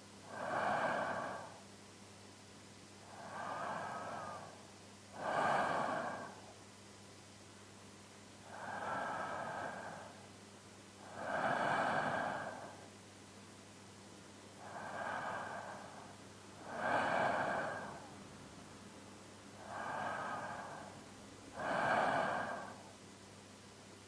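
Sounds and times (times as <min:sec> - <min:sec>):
man's deep sleep breathing: 0:00.3 - 0:01.6, 0:03.0 - 0:06.6, 0:08.4 - 0:10.3, 0:11.0 - 0:12.9, 0:14.6 - 0:18.6, 0:19.6 - 0:23.0.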